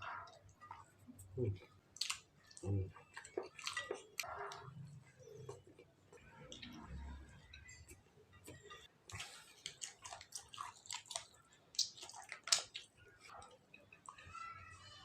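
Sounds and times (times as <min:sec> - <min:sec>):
person chewing and lip smacking: 0:02.0 - 0:04.3, 0:09.1 - 0:13.6.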